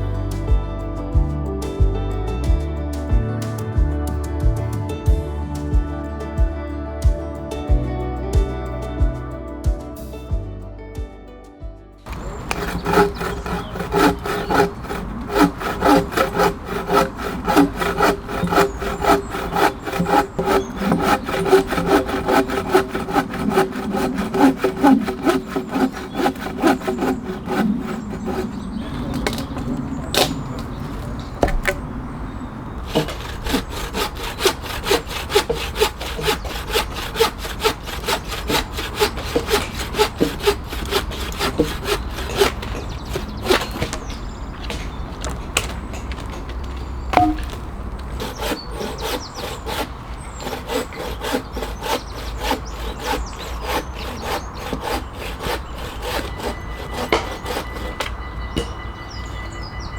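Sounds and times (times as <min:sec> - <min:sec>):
hand saw cutting wood: 0:12.1 - 0:30.4, 0:32.8 - 0:58.7.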